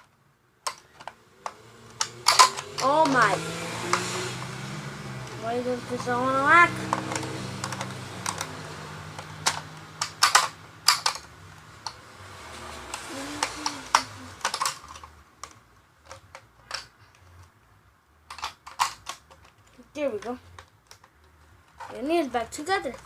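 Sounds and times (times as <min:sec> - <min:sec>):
plastic toy clicking: 0:00.6 - 0:04.1, 0:06.9 - 0:08.6, 0:09.2 - 0:12.0, 0:12.9 - 0:17.5, 0:18.3 - 0:22.1.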